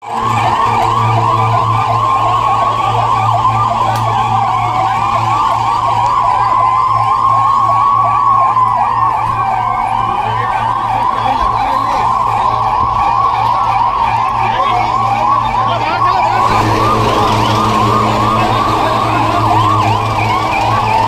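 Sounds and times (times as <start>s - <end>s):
fast-warbling sirens: 0.0s - 21.0s
slow rising and falling siren: 0.0s - 21.0s
steady low hum: 16.2s - 21.0s.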